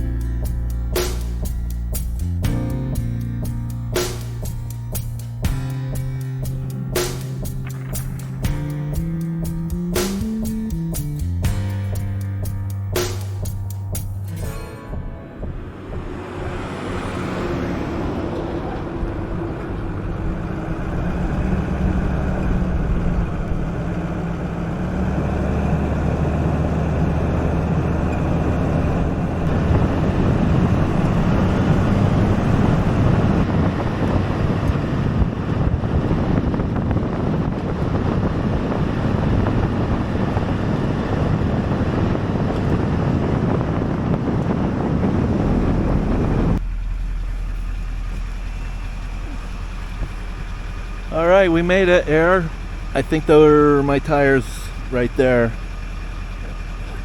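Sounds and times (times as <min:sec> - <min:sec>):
road and wind noise: 0:00.0 - 0:57.0
truck engine running: 0:00.0 - 0:57.0.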